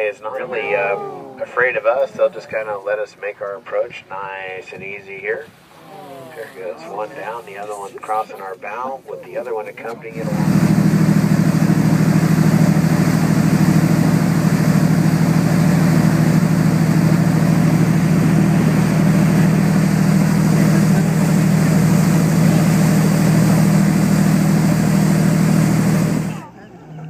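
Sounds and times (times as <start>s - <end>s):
boat engine droning: 10.0s - 27.0s.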